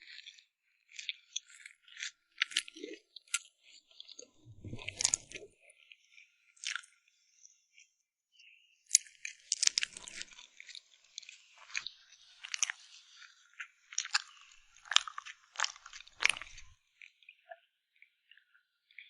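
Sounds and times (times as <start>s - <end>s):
crunchy chewing: 4.2s - 5.5s, 9.5s - 16.7s.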